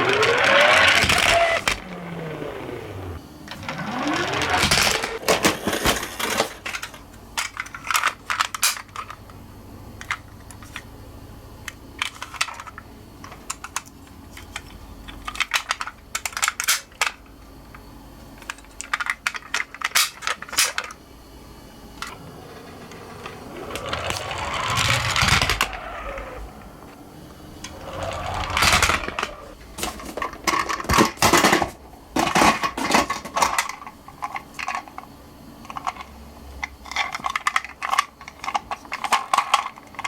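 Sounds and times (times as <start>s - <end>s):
toy cars clicking on plastic: 12.0s - 17.2s, 18.4s - 21.0s, 35.7s - 40.0s
toy car wheels rattling: 22.0s - 26.8s, 27.6s - 31.2s.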